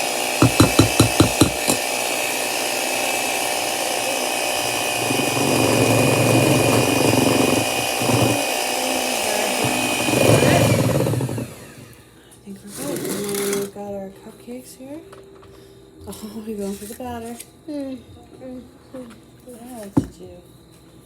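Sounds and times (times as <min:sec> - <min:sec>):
electric hand mixer running: 0:00.0 - 0:12.0.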